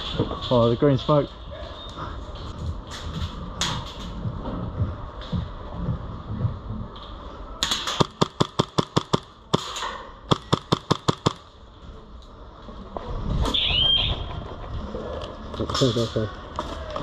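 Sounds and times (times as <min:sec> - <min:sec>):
airsoft gun firing sharp shots: 0:07.6 - 0:11.5.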